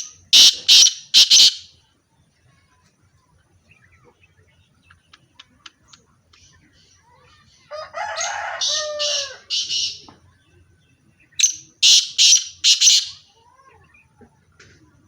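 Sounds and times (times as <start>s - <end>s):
partridges calling harshly: 0.0s - 1.8s, 8.2s - 10.1s, 11.3s - 13.3s.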